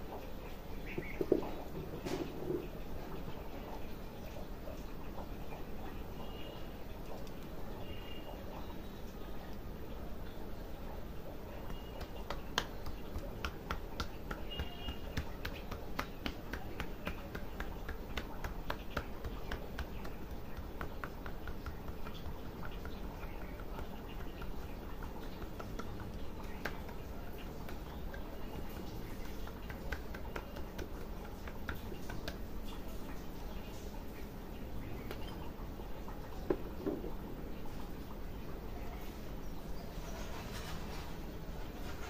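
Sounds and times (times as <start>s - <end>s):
steady background noise: 0.0s - 42.0s
hands tapping on head: 11.6s - 32.5s.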